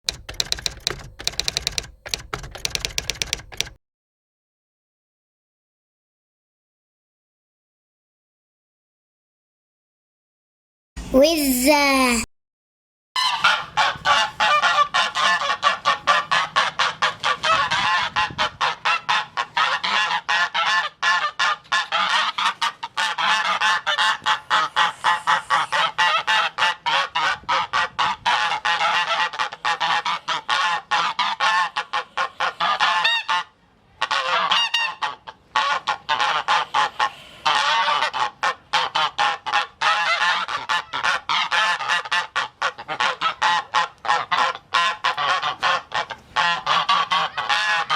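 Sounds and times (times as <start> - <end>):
goose honking: 13.2 - 33.4, 34.0 - 47.9.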